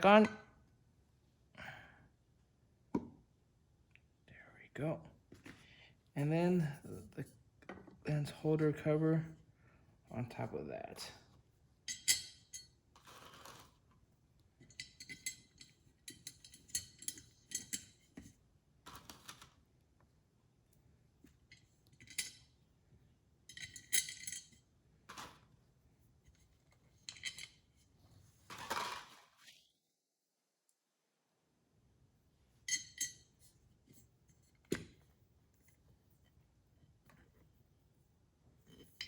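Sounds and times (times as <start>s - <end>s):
small hard parts clinking: 23.5s - 25.3s.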